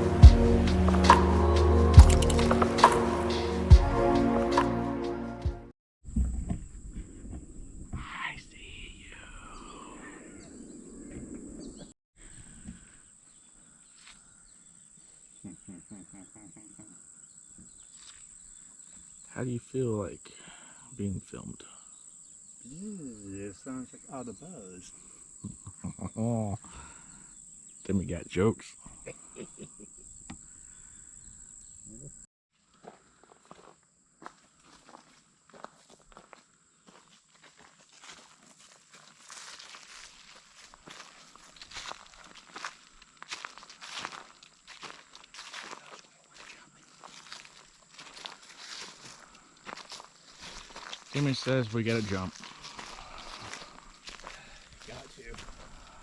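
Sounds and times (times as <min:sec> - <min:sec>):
high-pitched insect buzz: 0:00.0 - 0:03.5
faint bird chirps: 0:07.9 - 0:19.8
footsteps crunching on trail: 0:17.6 - 0:19.2, 0:32.6 - 0:56.0.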